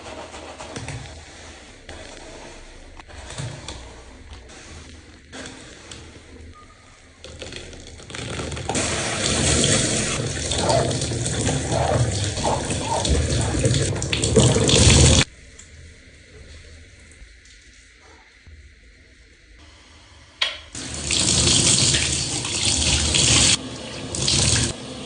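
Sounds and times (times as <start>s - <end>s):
running water: 7.2s - 15.3s, 20.8s - 25.0s.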